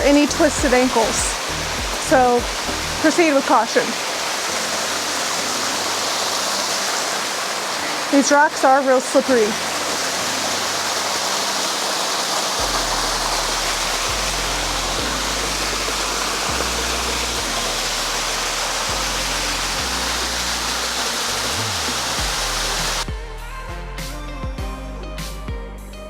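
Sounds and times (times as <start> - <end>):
music bass line: 0.0 - 3.2, 12.6 - 26.0
waterfall rushing: 0.0 - 23.1.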